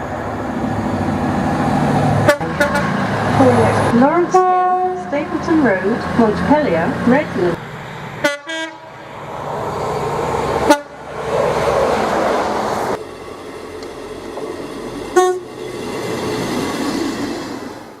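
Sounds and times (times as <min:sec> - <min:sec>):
trains running on rails: 0:00.0 - 0:18.0
train horn toots: 0:02.2 - 0:03.0, 0:08.2 - 0:08.9, 0:10.6 - 0:11.0, 0:15.1 - 0:15.6.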